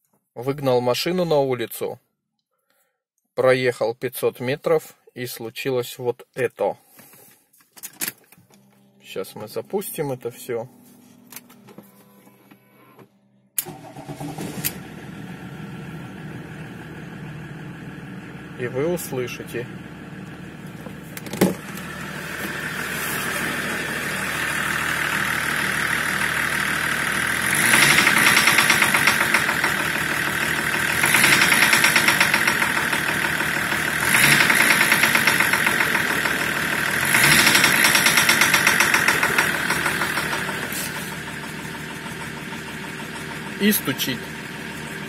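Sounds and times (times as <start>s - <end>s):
diesel engine idling and revving: 13.6s - 45.0s
engine knock: 24.7s - 45.0s.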